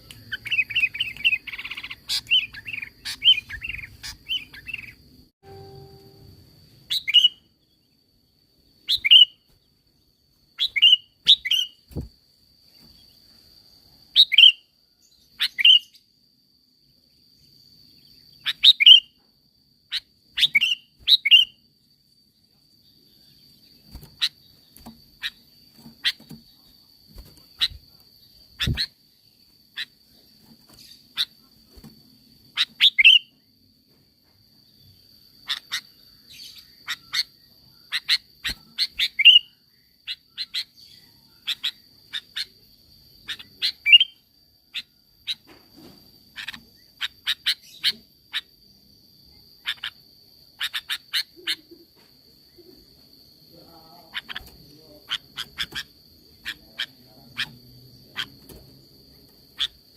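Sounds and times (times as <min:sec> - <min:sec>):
faint high whine: 0:02.2 - 0:10.4
bird calling: 0:59.6 - 0:59.8.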